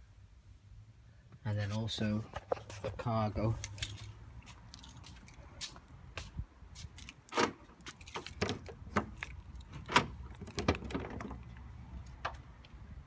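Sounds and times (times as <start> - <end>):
light clicks and clinks of handling: 3.6 - 5.4.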